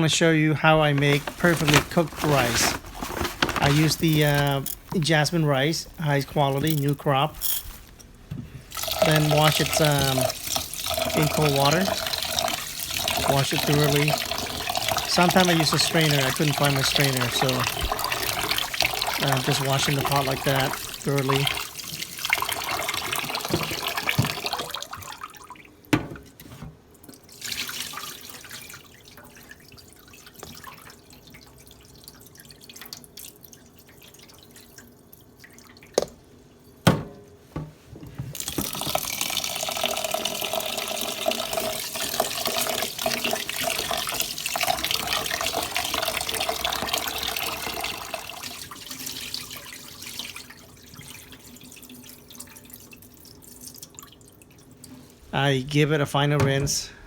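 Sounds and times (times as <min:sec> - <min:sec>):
tap water running into a pot: 0:00.8 - 0:36.3, 0:38.3 - 0:55.1.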